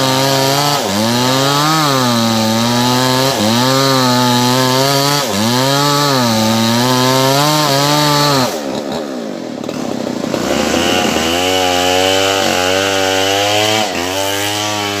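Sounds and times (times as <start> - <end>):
small engine running: 8.3 - 12.7.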